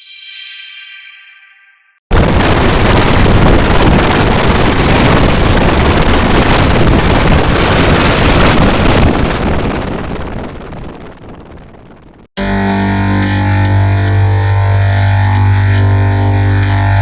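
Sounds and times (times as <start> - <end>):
harsh loud static noise: 2.1 - 12.6.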